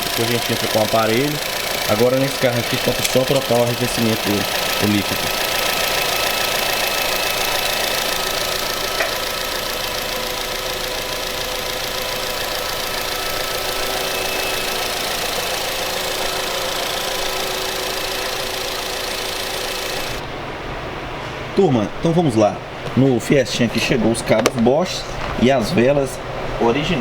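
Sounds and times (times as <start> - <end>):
fast even ticking: 0.0 - 20.2
car engine idling: 0.0 - 20.3.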